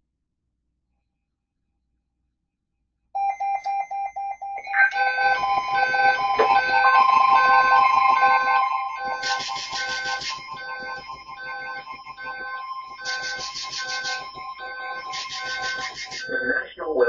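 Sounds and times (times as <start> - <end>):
beeping tones at different pitches: 3.2 - 17.0
held electronic tone: 3.2 - 17.0
rapid pulsing electronic beep: 4.4 - 17.0.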